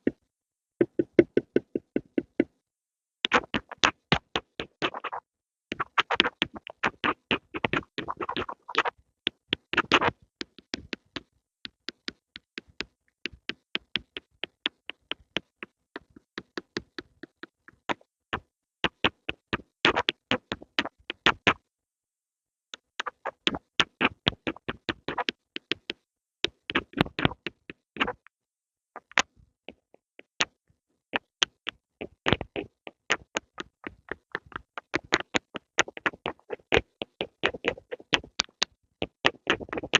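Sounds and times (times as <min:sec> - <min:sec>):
pencils tapping and scratching: 0:00.8 - 0:02.5, 0:03.2 - 0:17.9, 0:31.2 - 0:39.9.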